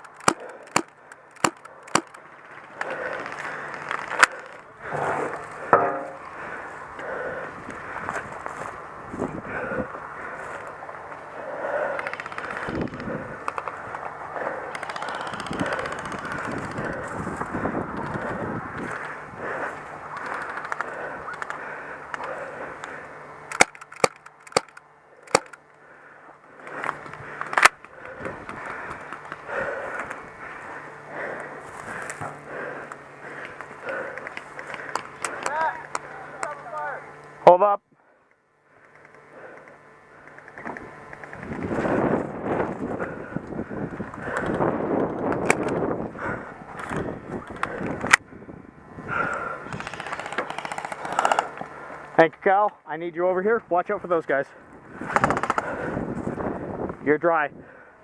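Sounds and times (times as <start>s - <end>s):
airsoft guns firing: 0.0s - 2.2s, 14.6s - 16.6s, 49.8s - 51.5s, 55.1s - 55.7s
rustling movement: 0.0s - 23.4s.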